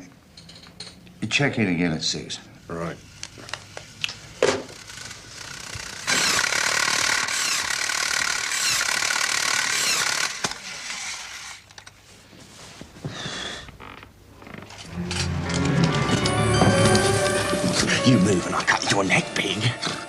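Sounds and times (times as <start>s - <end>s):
loud mechanical noise: 4.5s - 10.4s.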